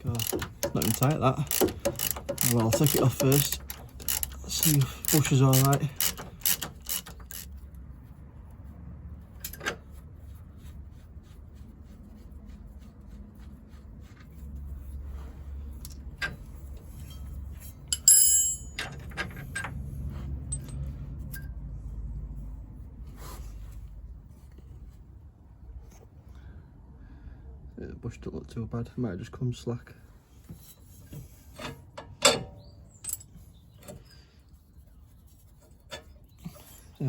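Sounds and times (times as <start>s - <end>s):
low steady rumble: 0.0s - 31.9s
ringing metal clink: 17.9s - 19.0s.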